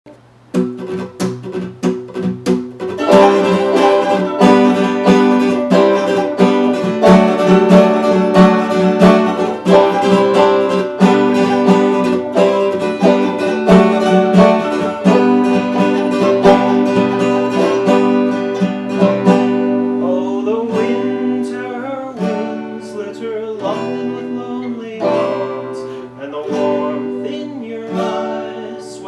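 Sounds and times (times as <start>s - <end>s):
plucked acoustic string instrument: 0.5s - 29.0s.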